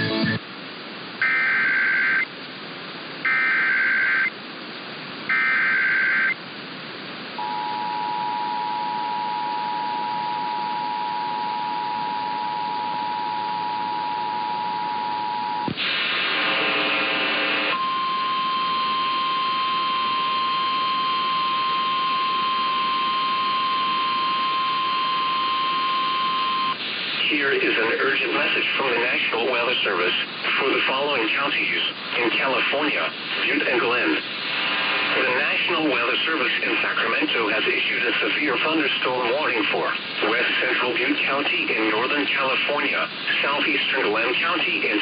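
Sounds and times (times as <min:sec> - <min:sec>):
single-tone warning alarm: 0:01.2 - 0:02.2, 0:03.3 - 0:04.3, 0:05.3 - 0:06.4, 0:07.4 - 0:15.6, 0:17.8 - 0:26.8.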